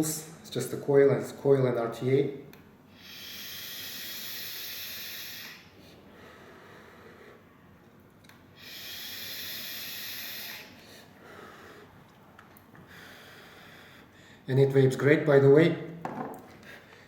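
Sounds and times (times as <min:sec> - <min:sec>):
hiss of air through atomizer: 0:02.9 - 0:06.0, 0:08.6 - 0:11.1.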